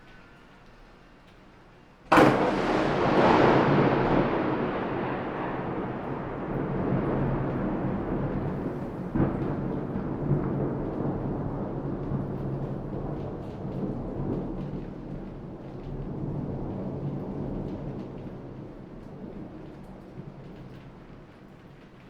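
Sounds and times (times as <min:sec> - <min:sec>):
rain falling: 0:00.0 - 0:22.0
thunder clap and rumble: 0:02.1 - 0:22.0.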